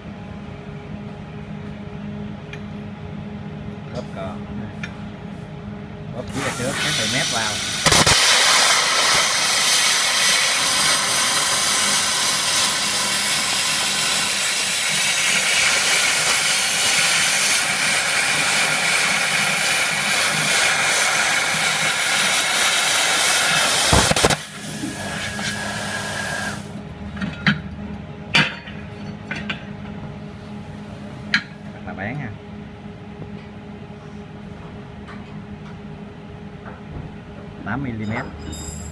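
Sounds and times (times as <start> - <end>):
steady hum: 0.0 - 35.0
plasma cutter hissing: 6.3 - 26.8.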